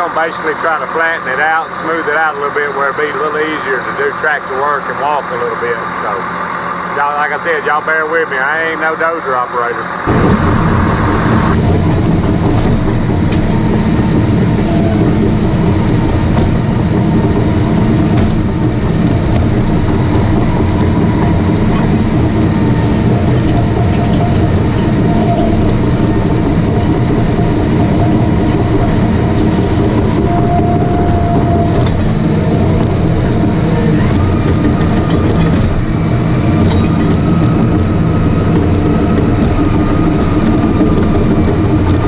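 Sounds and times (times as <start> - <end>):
diesel engine under load: 0.0 - 42.0
steel tracks clanking: 0.0 - 42.0.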